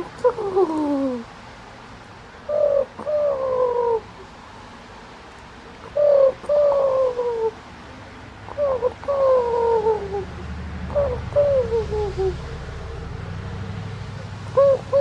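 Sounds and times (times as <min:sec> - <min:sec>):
dove cooing: 0:00.0 - 0:01.3, 0:02.4 - 0:04.2, 0:05.8 - 0:07.6, 0:08.5 - 0:12.7, 0:14.1 - 0:15.0.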